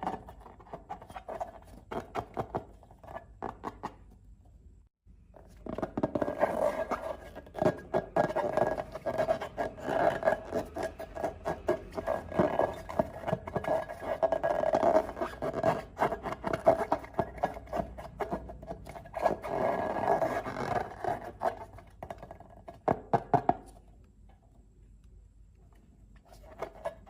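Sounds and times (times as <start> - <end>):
hands rubbing balloons: 5.4 - 23.1.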